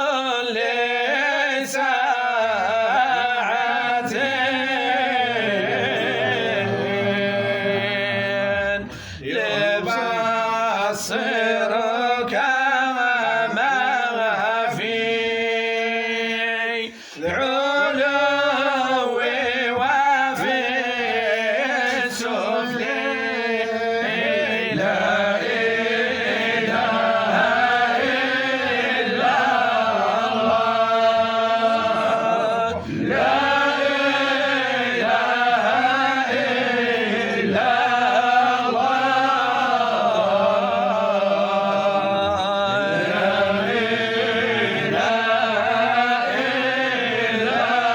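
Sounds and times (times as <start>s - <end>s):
man chanting melodically: 0.0s - 47.9s.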